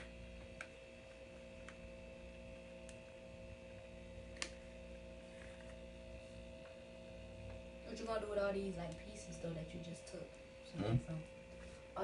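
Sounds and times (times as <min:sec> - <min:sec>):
steady electrical hum: 0:00.0 - 0:12.0.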